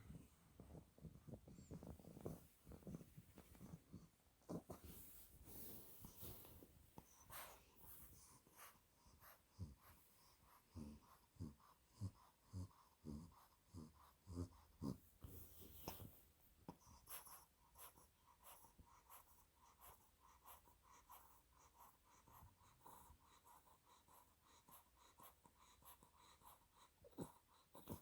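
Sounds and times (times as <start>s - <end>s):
puppy snoring faintly: 0.0s - 28.0s.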